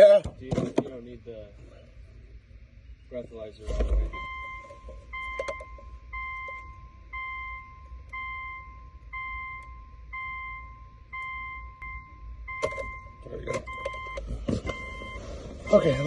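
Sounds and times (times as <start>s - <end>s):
electronic car beeping: 3.6s - 16.0s.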